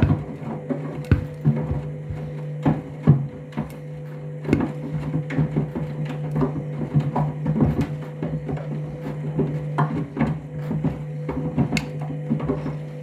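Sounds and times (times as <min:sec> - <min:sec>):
shoes thudding against drum: 0:00.0 - 0:03.8
washing machine motor hum: 0:00.0 - 0:13.0.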